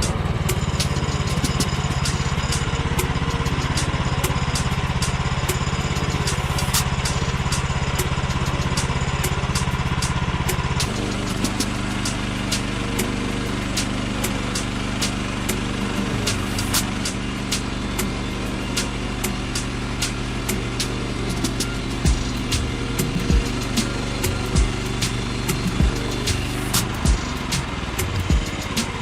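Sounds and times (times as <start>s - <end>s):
small gasoline engine running: 0.0s - 29.0s.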